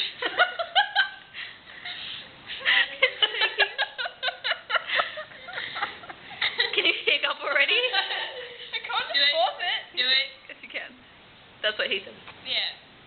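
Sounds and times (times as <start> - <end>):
women giggling and laughing: 0.0 - 9.0.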